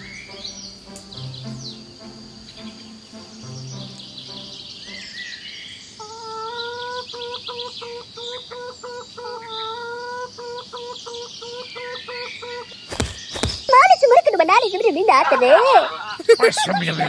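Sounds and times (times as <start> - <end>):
pulsing flat tone: 0.0 - 5.6
birds chirping: 0.0 - 17.0
insects trilling: 0.0 - 17.0.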